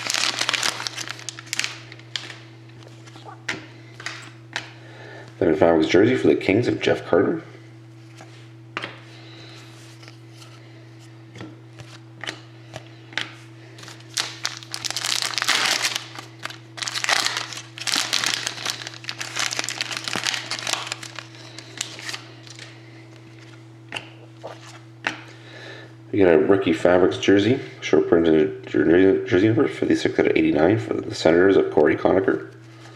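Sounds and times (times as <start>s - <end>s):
wrapper crinkling: 0.0s - 3.4s, 13.8s - 22.7s.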